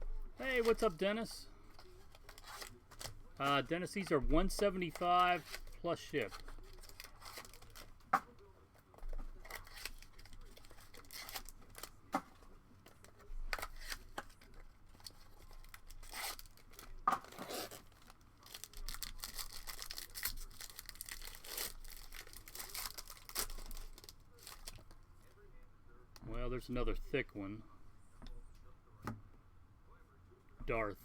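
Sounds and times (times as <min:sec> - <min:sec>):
foil wrapper tearing and crinkling: 0:00.4 - 0:01.2, 0:01.8 - 0:03.5, 0:04.4 - 0:08.1, 0:09.4 - 0:12.0, 0:13.6 - 0:25.0.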